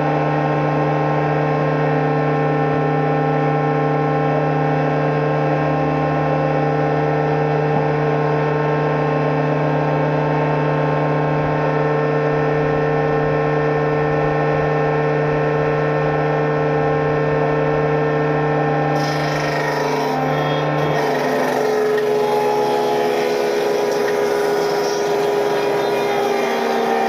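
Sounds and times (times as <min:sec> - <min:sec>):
woodworking machine humming: 0:18.9 - 0:27.0
wood rasping through cutter: 0:19.0 - 0:27.0.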